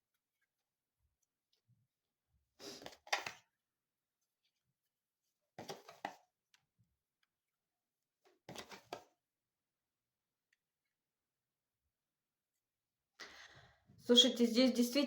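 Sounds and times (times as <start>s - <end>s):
cards being shuffled: 5.6s - 6.2s, 8.5s - 9.1s.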